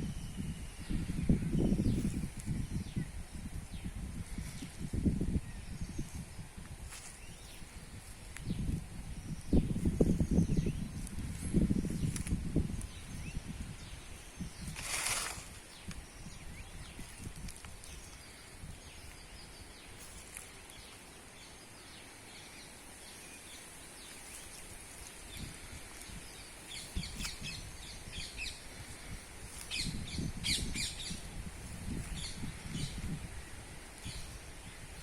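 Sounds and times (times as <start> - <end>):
low wind rumble: 0.0 - 35.0
small birds chirping: 0.0 - 35.0
steady high hiss: 0.0 - 35.0
brief rustle: 14.6 - 16.0.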